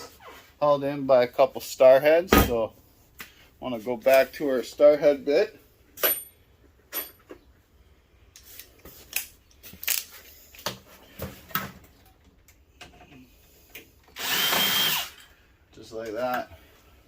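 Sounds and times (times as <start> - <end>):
drill bit clicks and clinks: 14.2 - 15.3.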